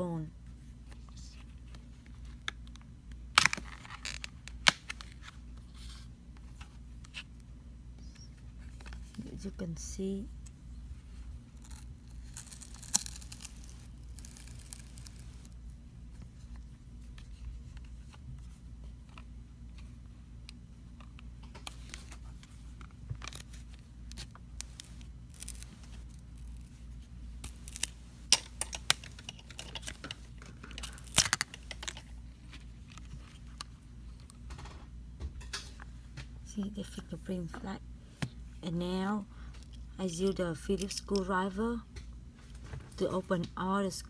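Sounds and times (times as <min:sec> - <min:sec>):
steady low hum: 0:00.0 - 0:44.0
plastic phone parts clicking: 0:27.4 - 0:32.1.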